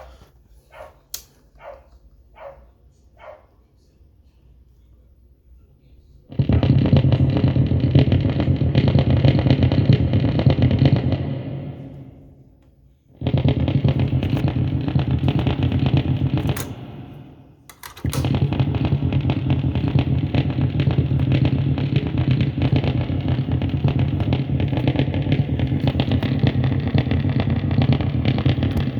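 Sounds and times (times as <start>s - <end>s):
distorted buzzing drone: 13.2s - 28.9s.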